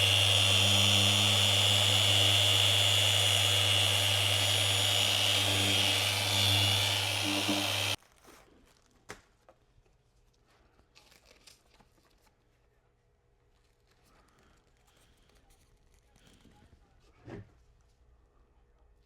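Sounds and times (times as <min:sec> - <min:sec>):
power tool whining: 0:00.0 - 0:08.0.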